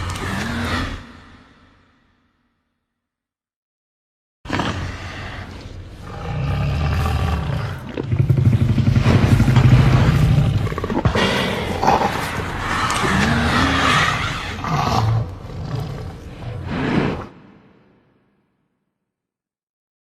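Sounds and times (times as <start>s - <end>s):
deep rumbling dinosaur roar: 0.0s - 2.1s, 4.5s - 17.9s.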